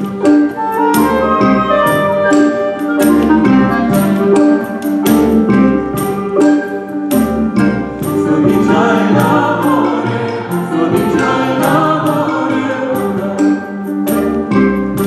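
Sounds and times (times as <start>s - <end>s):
steady beat: 0.0s - 13.4s
symphony orchestra playing: 0.0s - 15.0s
choir singing: 8.0s - 14.4s.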